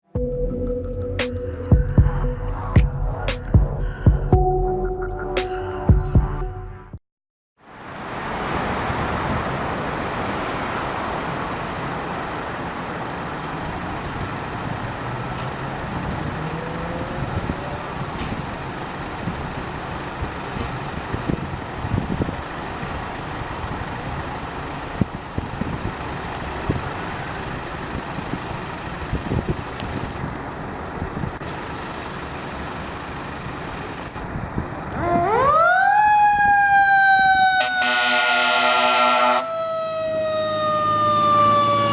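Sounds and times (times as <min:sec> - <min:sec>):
fire truck running: 0:07.8 - 0:41.9
siren winding up: 0:35.0 - 0:41.9.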